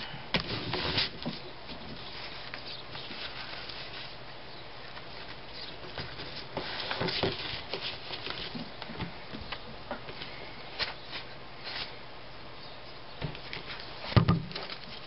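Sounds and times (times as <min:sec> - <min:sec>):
paper and cardboard rustling: 0:00.4 - 0:12.0, 0:13.2 - 0:15.0.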